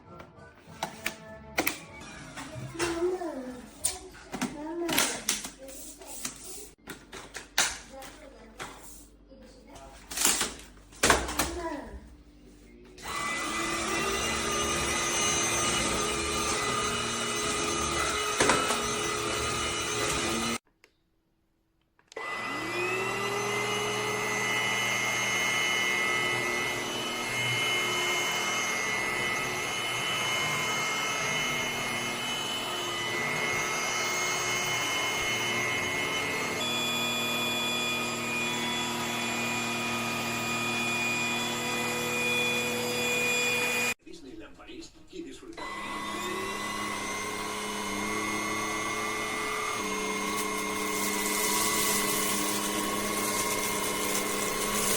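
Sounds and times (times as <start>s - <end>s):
vacuum cleaner motor whine: 13.0s - 20.6s, 22.1s - 44.0s, 45.6s - 54.9s.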